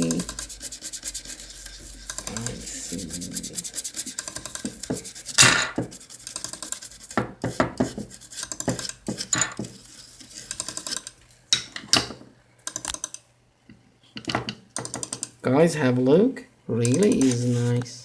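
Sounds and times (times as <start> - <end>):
scrubbing a chip: 0.0 - 11.2.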